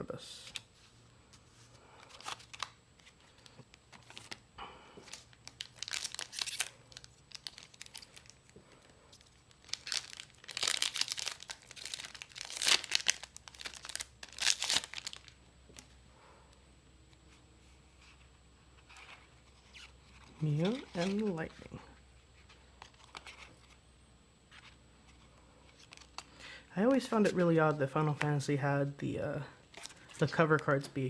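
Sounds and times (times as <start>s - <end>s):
foil wrapper crinkling and tearing: 5.0s - 15.4s.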